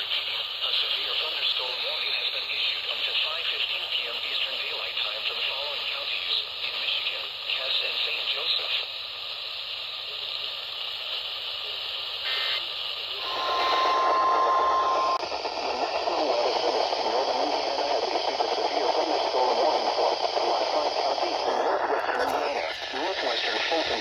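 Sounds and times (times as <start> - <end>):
radio static hiss: 0.0 - 24.0
burst of tones: 13.2 - 15.2
steady alert tone: 13.2 - 15.2.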